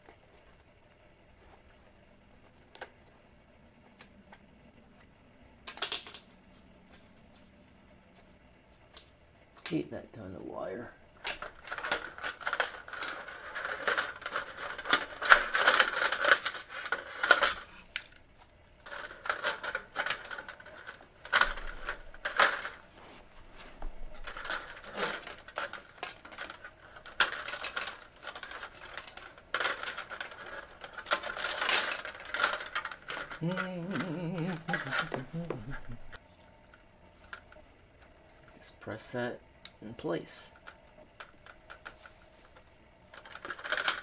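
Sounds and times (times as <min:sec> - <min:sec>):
hand tools clicking and scraping: 0:11.2 - 0:18.2, 0:18.8 - 0:36.2.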